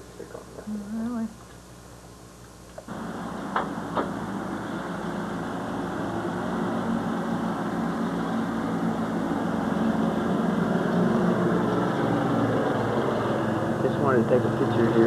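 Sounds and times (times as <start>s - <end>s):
low mechanical drone: 2.4s - 15.0s.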